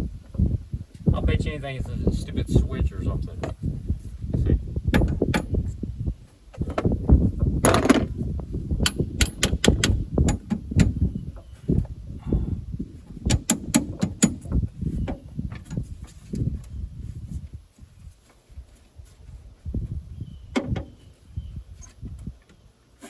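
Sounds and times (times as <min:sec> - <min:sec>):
steady low rumble: 0:00.0 - 0:20.5.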